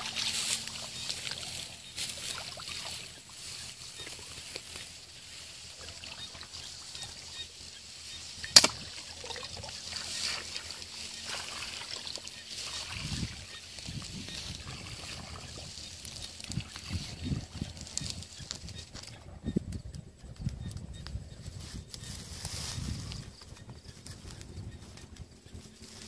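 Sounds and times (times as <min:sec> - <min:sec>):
water sloshing and trickling: 0:00.0 - 0:18.6.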